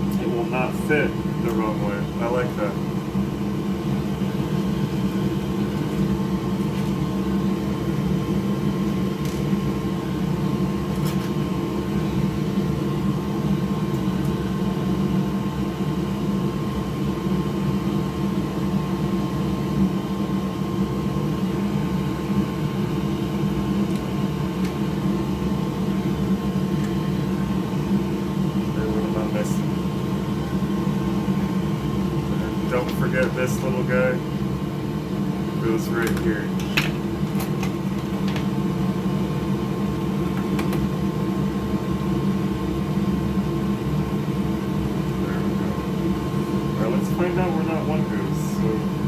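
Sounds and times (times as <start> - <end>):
machine hum: 0.0 - 49.0.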